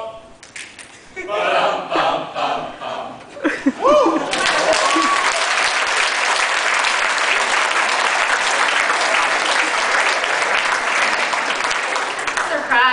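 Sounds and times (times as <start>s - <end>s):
crowd applauding: 3.9s - 12.9s.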